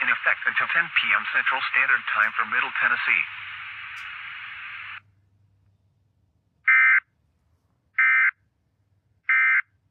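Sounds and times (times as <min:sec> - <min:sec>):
radio static hiss: 0:00.0 - 0:05.0.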